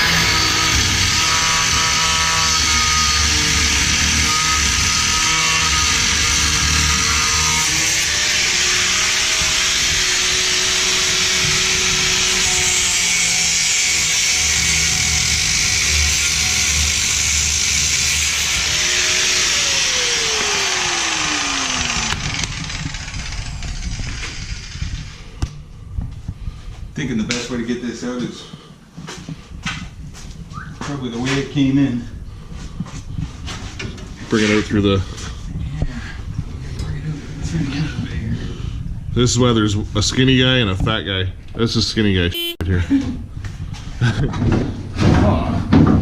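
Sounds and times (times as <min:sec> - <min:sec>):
cut-off tool whining: 0:00.0 - 0:25.0.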